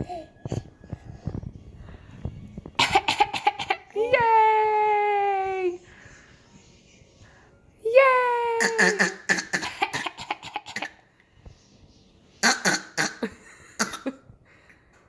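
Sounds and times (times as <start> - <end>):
person coughing: 12.4 - 14.2.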